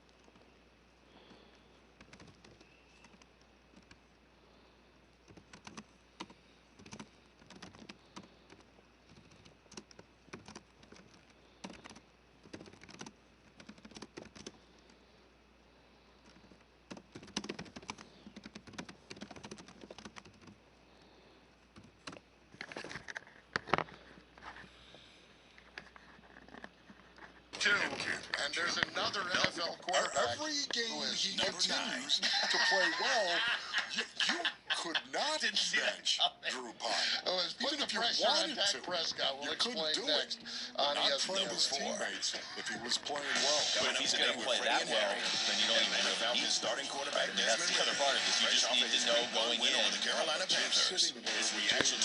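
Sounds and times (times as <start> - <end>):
faint computer keyboard typing: 0.0 - 0.5, 1.2 - 4.1, 5.1 - 15.0, 16.2 - 20.6, 21.6 - 24.0.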